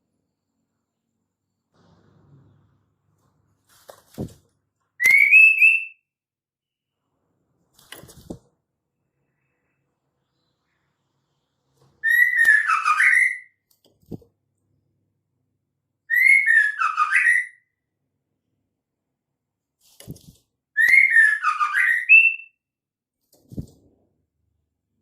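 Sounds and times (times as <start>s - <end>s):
bird warbling whistles: 5.0s - 6.0s, 12.0s - 13.6s, 16.1s - 17.6s, 20.8s - 22.6s.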